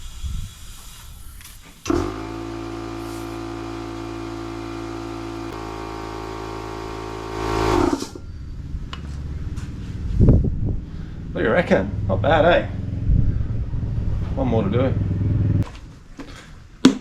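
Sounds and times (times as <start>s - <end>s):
electric air compressor running: 0.0s - 8.3s.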